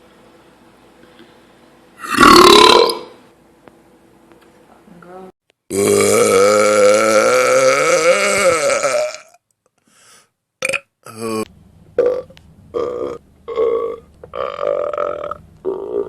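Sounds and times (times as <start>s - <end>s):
person burping: 2.0s - 3.2s, 5.7s - 9.4s, 10.6s - 16.0s.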